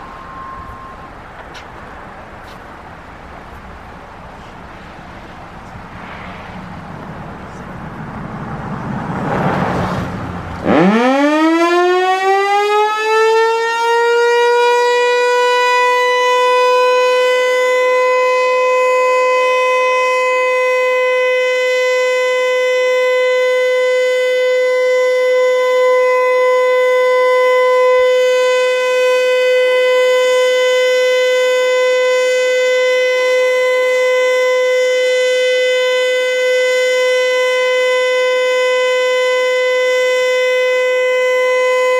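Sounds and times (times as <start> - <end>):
warning siren steady tone: 0.0 - 4.3, 6.6 - 41.9
rushing airy noise: 0.0 - 10.7.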